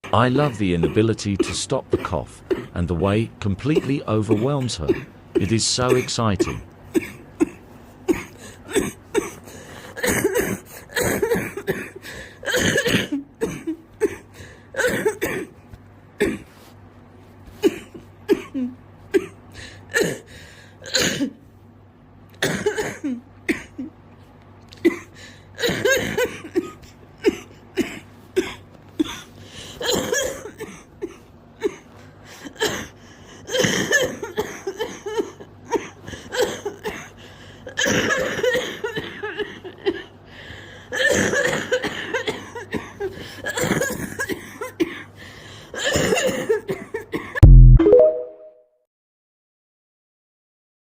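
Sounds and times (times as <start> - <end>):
person coughing: 0.4 - 2.8, 3.7 - 15.6, 16.2 - 16.5, 17.6 - 21.4, 22.4 - 23.9, 24.8 - 31.9, 32.5 - 37.1, 37.7 - 40.2, 41.0 - 45.1, 45.8 - 47.4.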